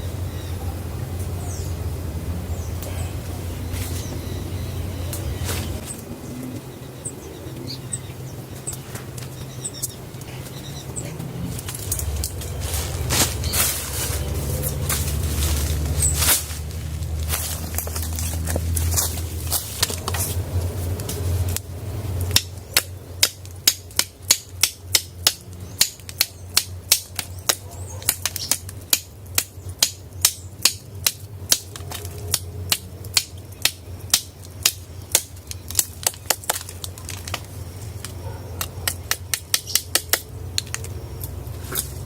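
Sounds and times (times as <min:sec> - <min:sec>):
steady low rumble: 0:00.0 - 0:42.0
sharp evenly spaced knocks: 0:08.5 - 0:42.0.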